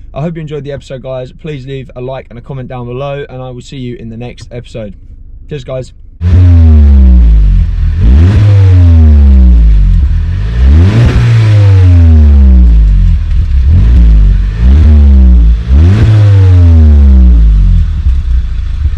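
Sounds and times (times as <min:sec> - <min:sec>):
car engine revving: 0:06.2 - 0:18.9.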